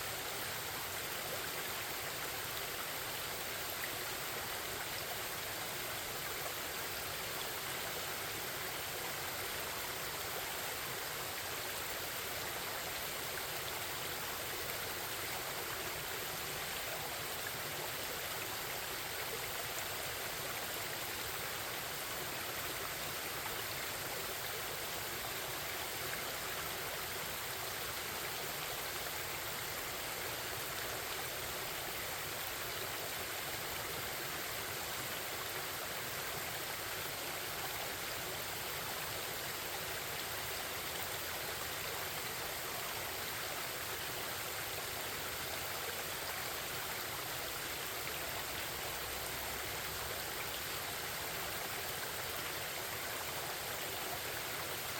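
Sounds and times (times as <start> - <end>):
stream babbling: 0.0 - 54.9.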